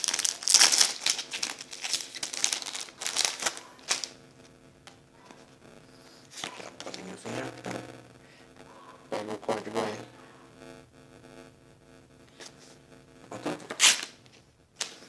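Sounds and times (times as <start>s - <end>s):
foil wrapper crinkling: 0.0s - 4.2s, 13.6s - 14.2s.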